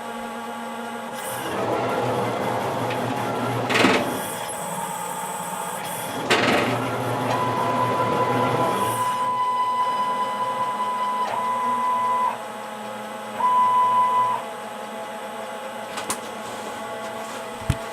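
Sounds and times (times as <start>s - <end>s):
machine motors whining: 1.2s - 15.0s.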